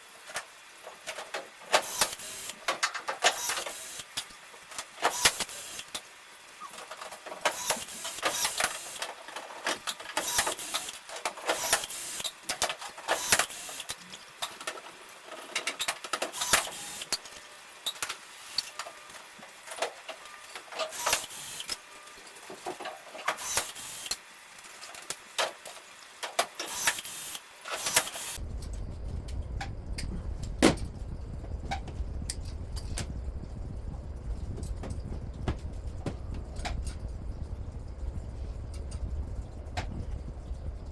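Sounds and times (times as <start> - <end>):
steady low hum: 26.8 - 40.9.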